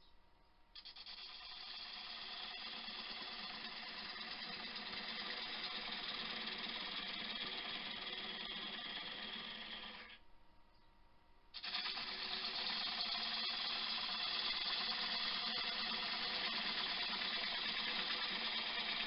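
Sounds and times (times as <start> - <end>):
gouge scraping spinning wood: 0.8 - 10.2, 11.6 - 19.0
lathe humming: 0.9 - 10.2, 11.6 - 19.0.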